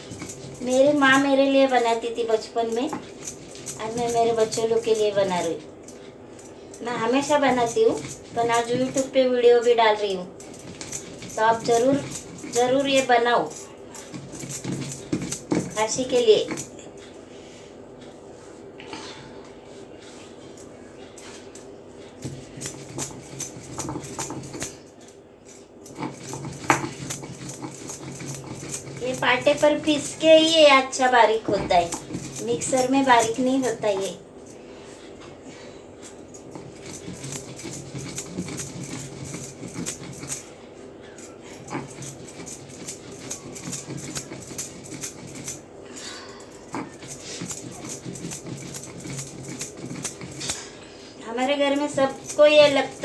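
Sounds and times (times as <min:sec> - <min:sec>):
stone roller scraping on grinding stone: 0:06.9 - 0:13.2, 0:25.9 - 0:34.0, 0:46.8 - 0:50.6.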